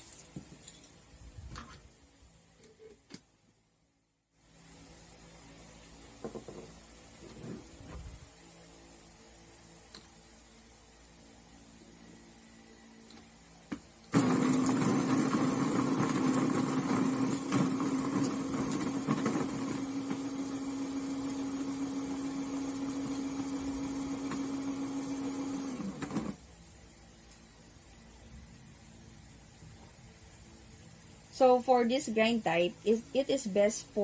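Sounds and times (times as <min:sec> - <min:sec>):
coffee grinder grinding beans: 0:14.1 - 0:26.4.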